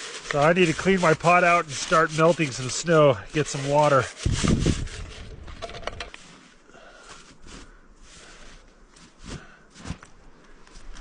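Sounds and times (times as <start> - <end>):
snow scraping a cooking pot: 0.0 - 10.0.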